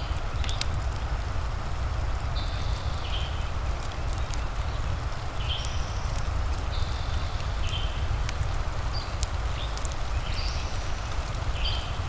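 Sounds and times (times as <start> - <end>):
rain hiss: 0.0 - 12.0
fireplace crackling: 3.4 - 11.6.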